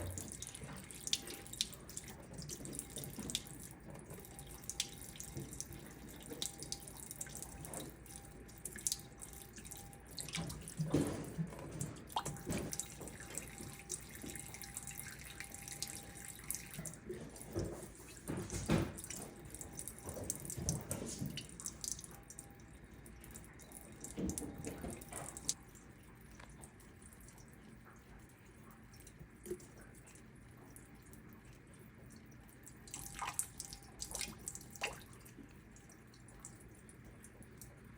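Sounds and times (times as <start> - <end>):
tap water running into sink: 0.0 - 22.5.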